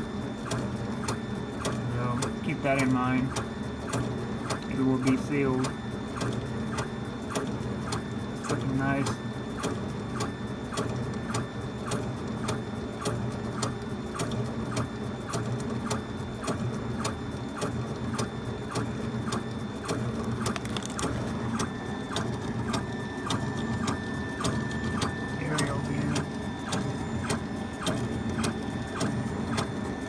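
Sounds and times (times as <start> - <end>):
low machine hum: 0.0 - 30.0
stepper motor ticking: 0.0 - 30.0.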